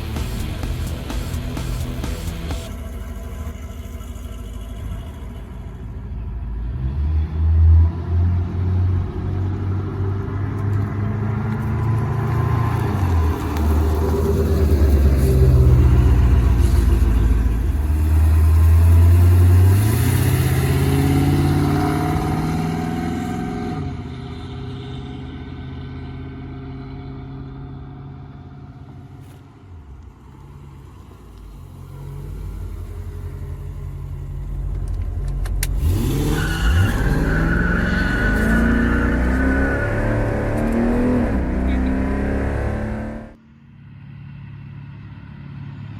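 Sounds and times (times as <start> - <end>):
car passing close: 0.0 - 43.4
car engine accelerating: 0.0 - 43.5.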